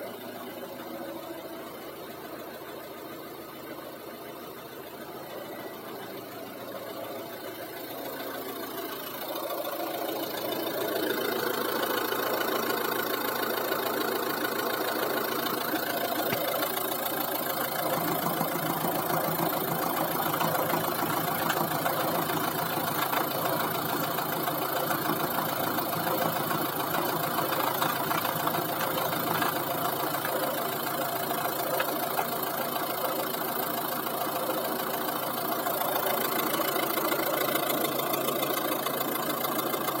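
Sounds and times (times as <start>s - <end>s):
diesel engine idling: 0.0s - 40.0s
soft engine knock: 16.1s - 16.8s.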